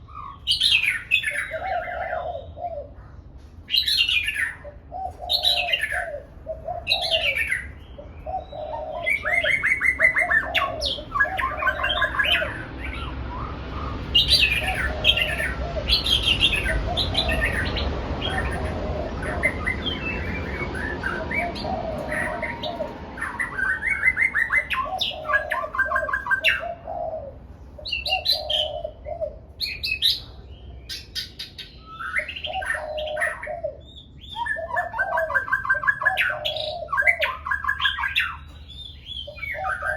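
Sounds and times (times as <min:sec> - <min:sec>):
birds singing whistled phrases: 0:00.0 - 0:02.6, 0:03.7 - 0:26.9, 0:27.8 - 0:39.9
low repeated bird notes: 0:00.0 - 0:39.9
rushing noise: 0:11.0 - 0:24.5.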